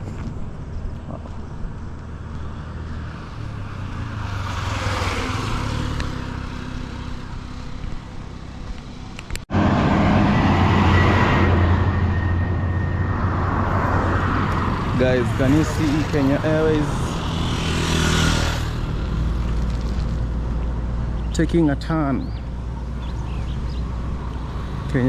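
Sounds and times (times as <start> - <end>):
low traffic rumble: 0.0 - 25.0
vehicle passing: 1.6 - 21.2.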